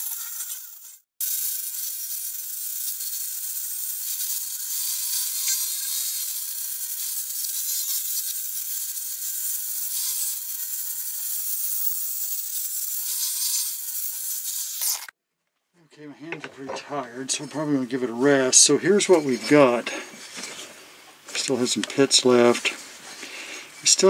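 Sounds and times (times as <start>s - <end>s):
electric grinder grinding steel: 0.0s - 15.2s.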